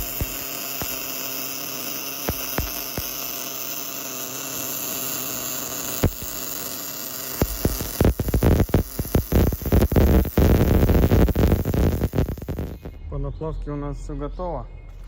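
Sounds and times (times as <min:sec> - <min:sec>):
electrical hum and hiss: 0:00.0 - 0:13.0
sharp clicks: 0:02.2 - 0:03.3, 0:07.4 - 0:13.0.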